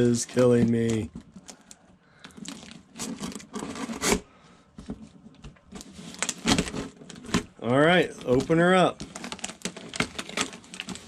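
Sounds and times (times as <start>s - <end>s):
crinkling: 0.0s - 11.0s
cardboard and tape tearing: 2.3s - 4.2s, 5.7s - 11.0s.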